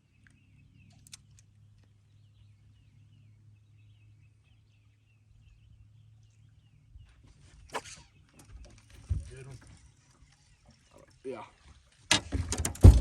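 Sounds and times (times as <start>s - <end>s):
faint wavering bird chirps: 2.1s - 8.7s.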